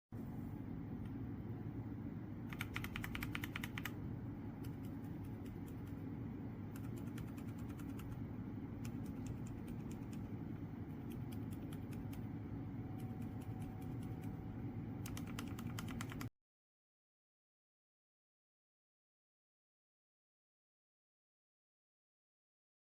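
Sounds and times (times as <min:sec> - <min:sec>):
steady low hum: 0:00.1 - 0:16.3
mechanical keyboard typing: 0:02.4 - 0:04.0, 0:04.6 - 0:06.0, 0:06.7 - 0:14.4, 0:15.0 - 0:16.3.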